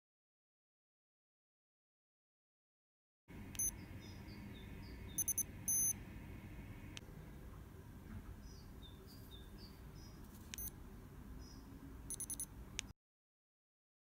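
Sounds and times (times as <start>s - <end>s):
thermometer electronic pips: 3.4s - 7.1s, 10.2s - 10.8s, 12.1s - 12.9s
soft high chirps: 3.5s - 6.0s, 8.5s - 10.8s, 11.4s - 12.9s.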